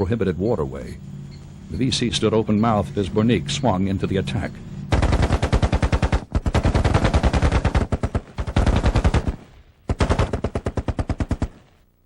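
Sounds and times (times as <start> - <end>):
automatic machine-gun fire: 4.9 - 11.8.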